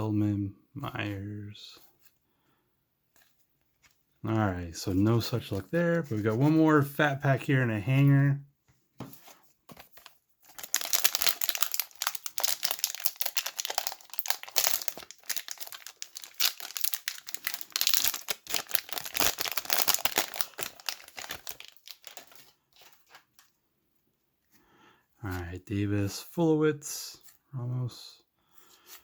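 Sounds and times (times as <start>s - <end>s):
plastic wrapper tearing and crinkling: 9.9s - 23.5s.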